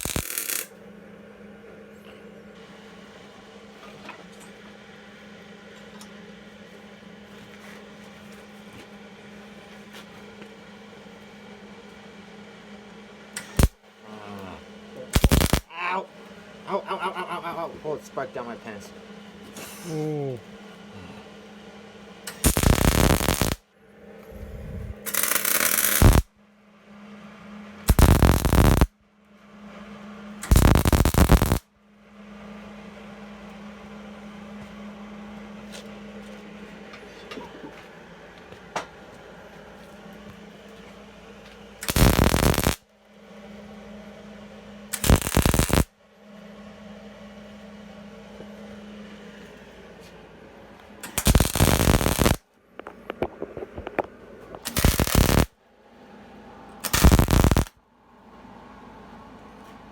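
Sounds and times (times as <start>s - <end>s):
welder arcing: 0.0s - 0.7s, 13.3s - 13.8s, 15.1s - 15.7s, 22.2s - 23.6s, 24.8s - 26.3s, 27.9s - 28.9s, 30.4s - 31.6s, 41.8s - 42.8s, 44.9s - 45.9s, 51.0s - 52.4s, 54.6s - 55.5s, 56.8s - 57.7s
low hum: 0.0s - 9.9s, 10.5s - 59.3s.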